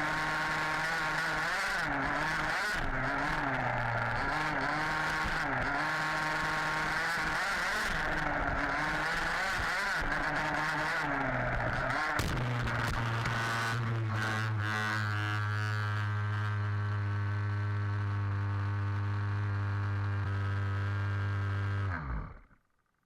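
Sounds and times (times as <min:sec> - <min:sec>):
small two-stroke engines revving: 0:00.0 - 0:22.4.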